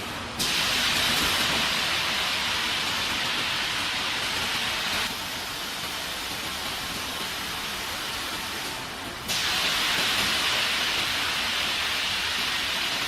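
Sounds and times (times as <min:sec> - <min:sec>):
machinery hissing: 0:09.3 - 0:13.0.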